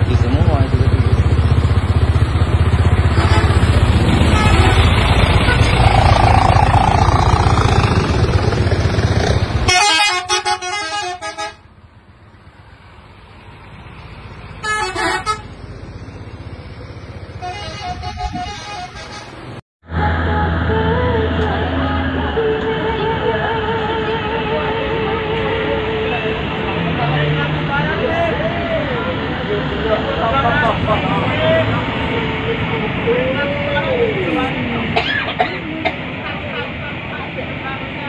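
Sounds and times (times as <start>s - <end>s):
bus engines passing: 0.0s - 38.0s
road noise: 0.0s - 38.0s
multi-tone bus horn melody: 3.0s - 5.9s, 9.6s - 11.7s, 14.6s - 15.6s, 17.4s - 19.6s, 20.2s - 26.6s.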